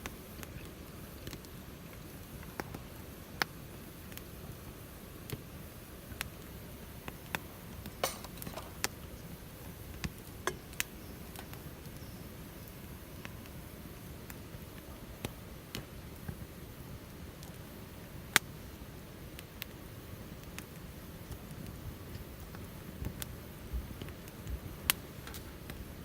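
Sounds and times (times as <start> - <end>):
hiss of burning: 0.0 - 26.0
wood fire crackling and popping: 0.0 - 26.0
sharp pops of fire: 6.2 - 12.1, 18.3 - 18.6, 20.4 - 25.9.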